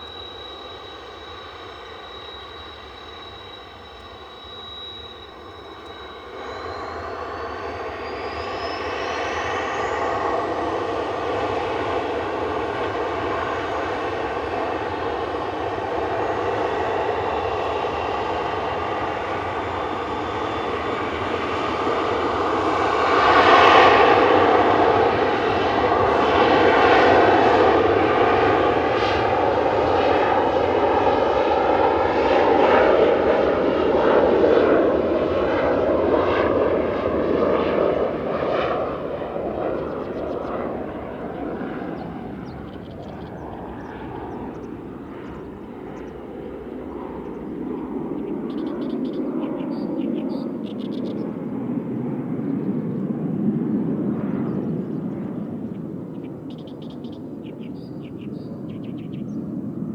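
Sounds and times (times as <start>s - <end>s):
aircraft engine: 0.0s - 59.9s.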